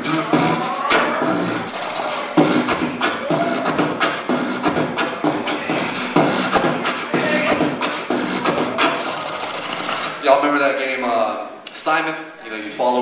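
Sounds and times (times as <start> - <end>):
beatboxing kick and snare: 0.0 - 10.2
pitched vocal line: 0.0 - 10.2.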